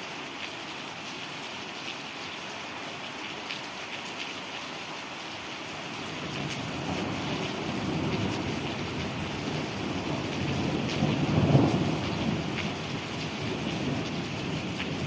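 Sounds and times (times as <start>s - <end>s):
steady rain: 0.0s - 15.0s
thunder rumbling: 6.4s - 15.0s.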